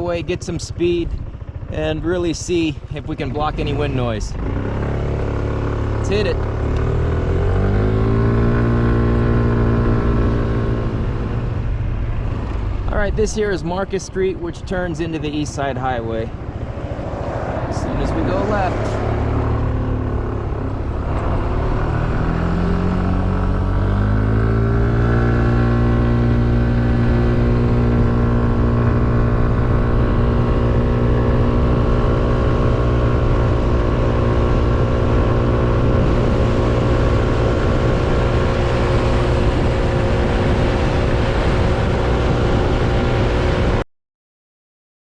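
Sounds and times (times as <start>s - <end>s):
scooter engine accelerating: 0.1s - 12.9s, 15.9s - 43.8s
wind rushing: 16.3s - 23.6s, 34.2s - 43.8s.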